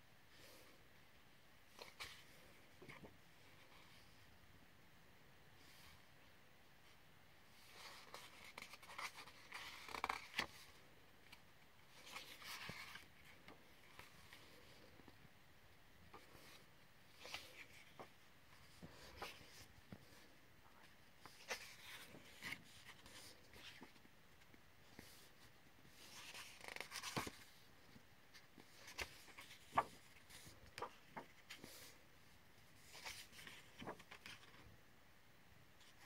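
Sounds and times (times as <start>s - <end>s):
paper pages rustling: 1.7s - 4.0s, 7.6s - 14.9s, 16.1s - 24.1s, 24.8s - 32.0s, 32.8s - 34.6s.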